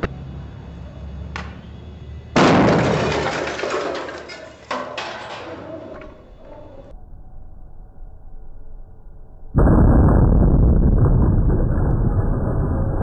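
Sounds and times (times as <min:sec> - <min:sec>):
loud explosion blast: 0:02.4 - 0:03.2, 0:09.6 - 0:13.0.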